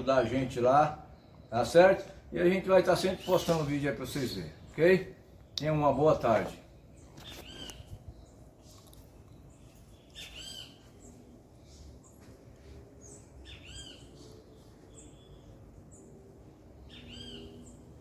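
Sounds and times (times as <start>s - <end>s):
low background noise: 0.0s - 18.0s
higher bird chirps: 3.0s - 12.2s, 13.0s - 16.2s, 16.8s - 17.9s
short arching bird calls: 7.1s - 7.9s, 10.0s - 11.0s, 13.4s - 14.1s, 16.9s - 17.7s.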